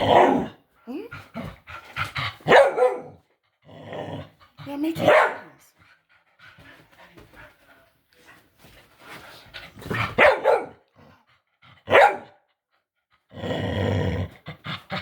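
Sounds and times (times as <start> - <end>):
dog barking loudly: 2.4 - 3.2, 5.0 - 5.6, 10.1 - 10.8, 11.9 - 12.4.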